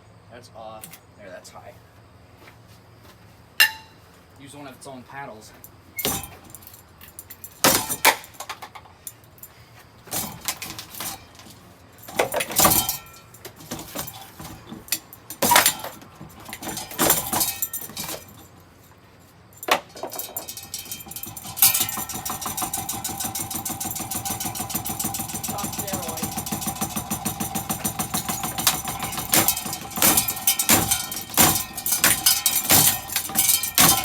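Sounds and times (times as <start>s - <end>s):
fan blade clattering crashes: 6.0s - 8.8s, 10.0s - 18.6s, 19.6s - 34.0s
fast steady rattling: 10.1s - 18.5s, 19.9s - 34.0s.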